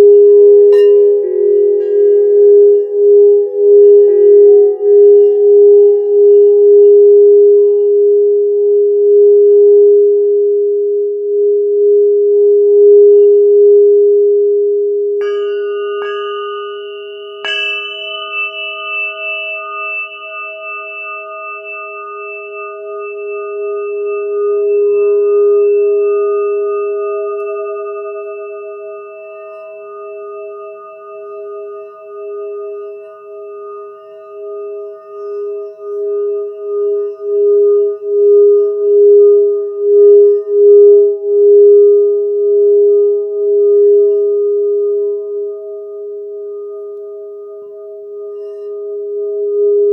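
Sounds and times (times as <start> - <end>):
crystal singing bowl ringing: 0.0 - 8.0, 15.2 - 49.9
higher crystal instrument struck: 15.2 - 39.0.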